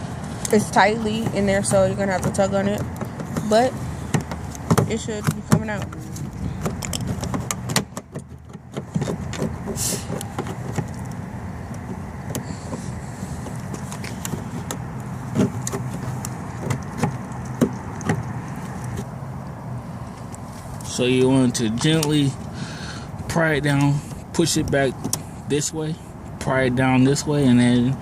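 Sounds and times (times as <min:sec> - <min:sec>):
steady low hum: 0:00.0 - 0:28.0
screwdriver prying at door handle: 0:06.6 - 0:11.1.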